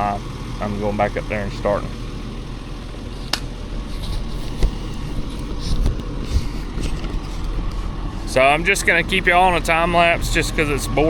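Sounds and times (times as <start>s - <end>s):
excavator diesel engine running: 0.0s - 11.0s.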